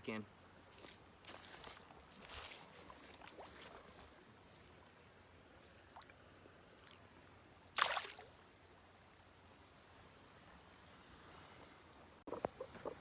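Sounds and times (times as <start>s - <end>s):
creek water flowing: 0.5s - 8.8s
fish splash: 7.7s - 8.4s.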